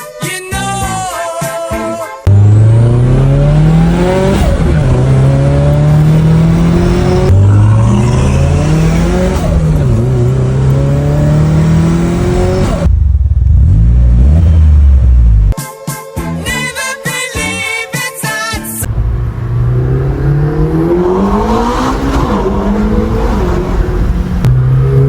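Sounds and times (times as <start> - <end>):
music: 0.0 - 2.3, 15.4 - 18.9
car engine accelerating: 2.3 - 15.6, 18.8 - 25.0
deep low rumble: 12.6 - 15.6.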